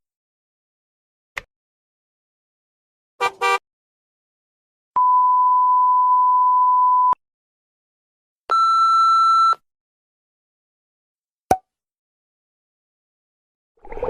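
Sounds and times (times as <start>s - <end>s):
pure bleep tone: 5.0s - 7.2s.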